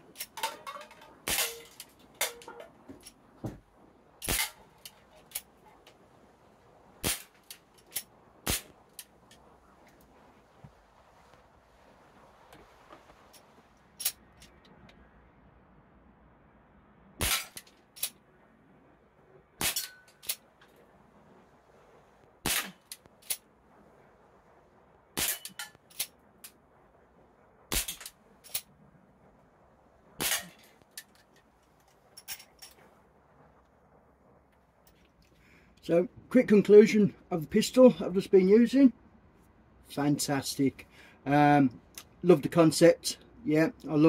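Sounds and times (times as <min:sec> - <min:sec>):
pellets knocking tin cans: 0:00.2 - 0:02.7.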